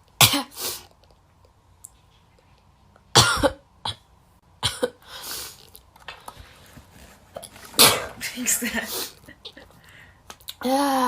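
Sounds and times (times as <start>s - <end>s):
girl coughing: 0.2s - 0.6s, 3.2s - 4.0s, 4.6s - 5.0s, 7.8s - 8.9s
girl sneezing: 0.2s - 0.8s.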